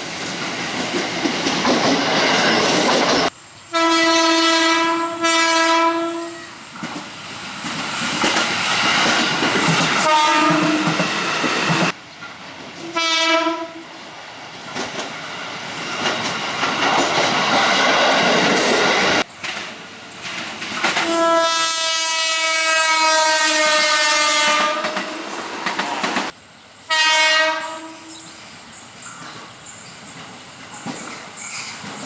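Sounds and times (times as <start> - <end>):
train rumble and wheel clatter: 0.0 - 32.0
electric train horn blasts: 3.7 - 6.5, 10.0 - 11.0, 12.9 - 13.8, 21.0 - 25.2, 26.9 - 28.3.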